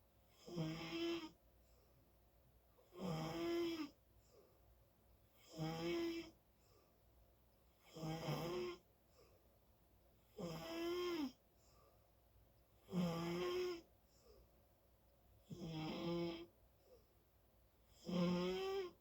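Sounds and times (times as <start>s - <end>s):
person snoring loudly: 18.0s - 19.0s.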